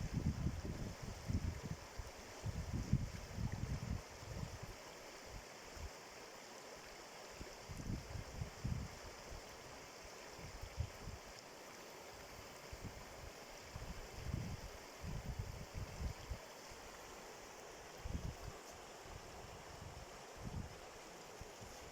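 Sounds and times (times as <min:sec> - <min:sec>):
wind rumbling on microphone: 0:00.0 - 0:04.8, 0:07.6 - 0:09.4, 0:12.7 - 0:16.4, 0:18.0 - 0:21.9
running water hissing: 0:00.0 - 0:21.9.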